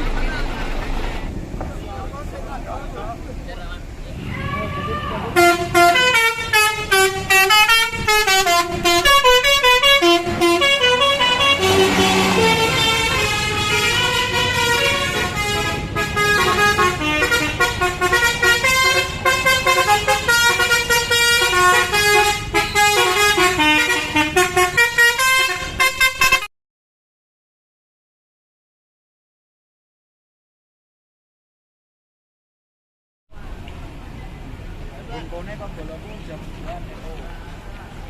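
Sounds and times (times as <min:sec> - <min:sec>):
bus horn playing melodic tune: 0:05.3 - 0:26.5.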